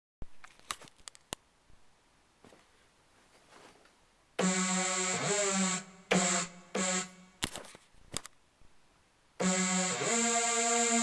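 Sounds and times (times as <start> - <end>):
small clicks: 0.4 - 1.4.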